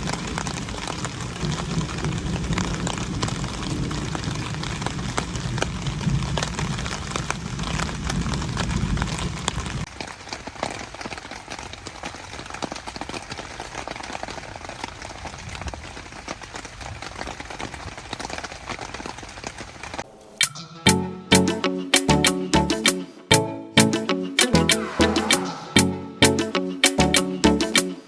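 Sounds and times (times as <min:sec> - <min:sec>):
rain pattering: 0:00.0 - 0:20.2.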